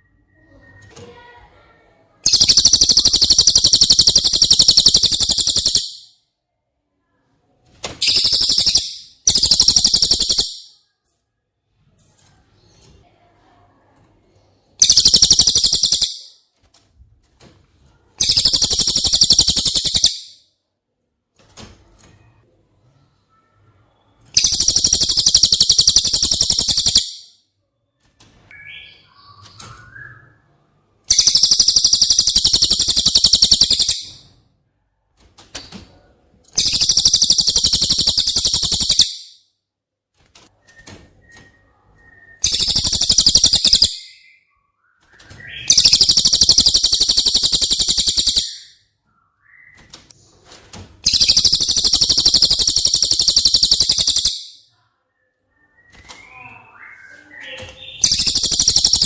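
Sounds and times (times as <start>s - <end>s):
bird rattling trills: 2.3s - 6.1s, 8.0s - 10.7s, 14.8s - 16.3s, 18.2s - 20.3s, 24.4s - 27.1s, 31.1s - 34.2s, 36.6s - 39.2s, 42.4s - 44.0s, 45.7s - 48.7s, 51.0s - 54.5s, 58.0s - 59.0s.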